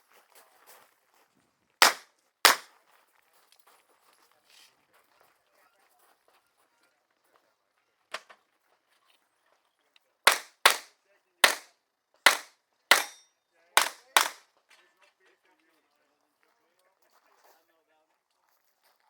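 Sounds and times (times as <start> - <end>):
revolver shots: 1.8 - 2.7, 10.3 - 11.6, 12.3 - 13.2.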